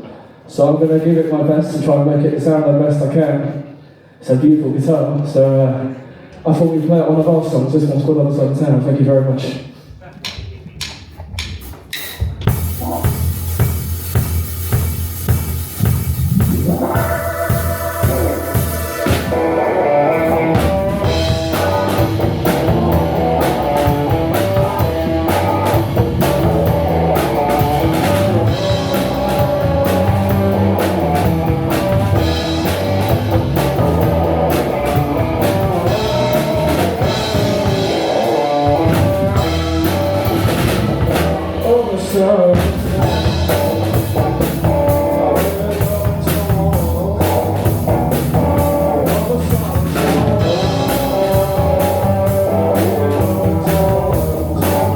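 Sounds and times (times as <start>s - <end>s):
drum kit: 10.0s - 54.9s
blues band playing: 11.1s - 54.9s
guitar: 12.4s - 54.9s.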